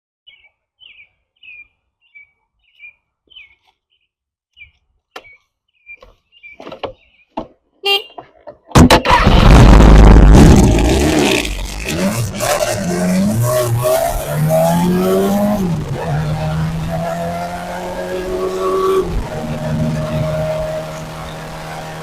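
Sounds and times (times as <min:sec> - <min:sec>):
small birds chirping: 0:00.2 - 0:08.3
motorcycle engine running: 0:17.8 - 0:22.0.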